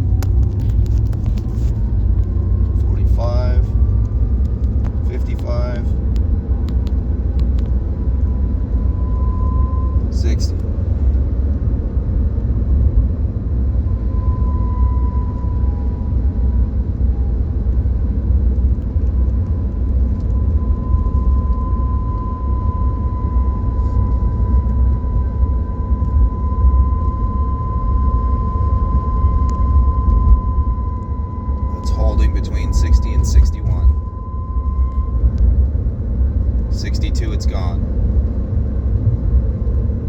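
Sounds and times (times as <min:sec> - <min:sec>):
road and drivetrain rumble: 0:00.0 - 0:40.0
thin high-pitched whine: 0:08.3 - 0:11.1, 0:13.8 - 0:16.6, 0:19.4 - 0:36.0, 0:36.7 - 0:37.8.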